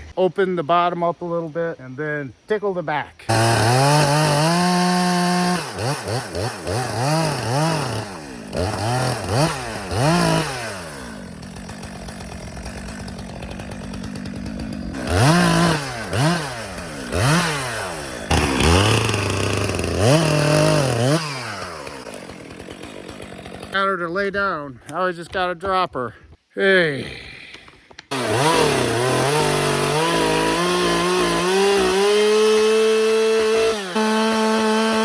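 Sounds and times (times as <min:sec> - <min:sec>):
chainsaw revving and idling: 0:03.3 - 0:24.0, 0:28.1 - 0:35.0.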